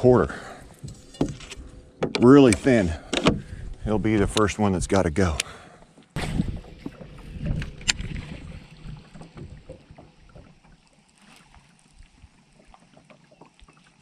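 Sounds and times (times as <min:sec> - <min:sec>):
low knocks and thumps on boat: 0:06.2 - 0:10.7.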